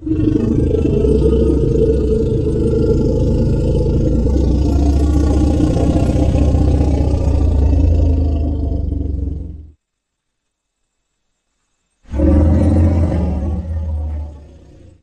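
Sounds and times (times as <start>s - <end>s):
rhinoceros deep rumbling call: 0.0s - 9.8s.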